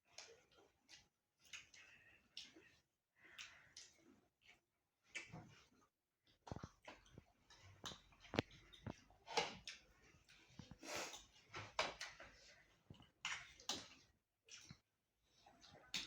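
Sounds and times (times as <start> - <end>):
chewing and slurping: 0.1 - 16.0.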